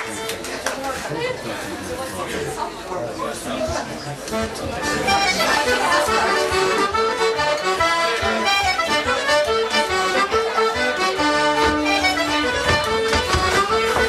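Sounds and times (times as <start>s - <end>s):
accordion playing a folk tune: 0.0s - 0.9s, 4.2s - 14.0s.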